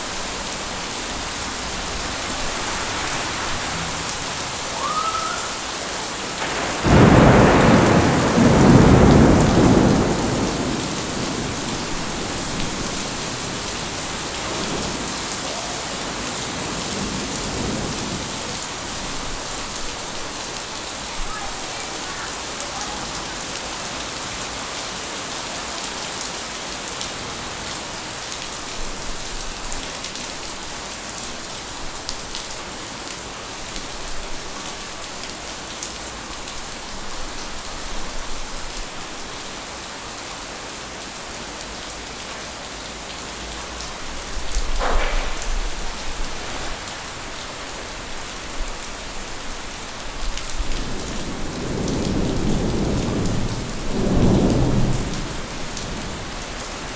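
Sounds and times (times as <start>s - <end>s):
thunder rumbling: 0.0s - 20.5s, 44.0s - 56.9s
rain splashing on hard surfaces: 0.0s - 56.9s.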